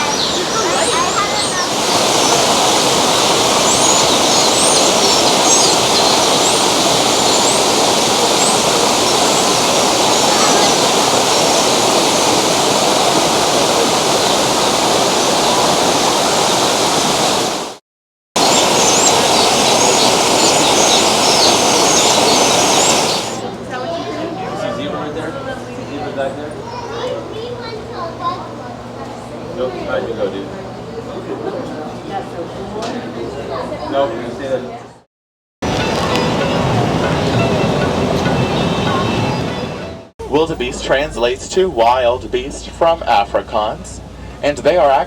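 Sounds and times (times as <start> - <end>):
birds chirping: 0.0 - 17.5, 18.4 - 23.4, 35.6 - 45.0
rushing water: 0.0 - 17.8, 18.4 - 23.4, 35.6 - 45.0.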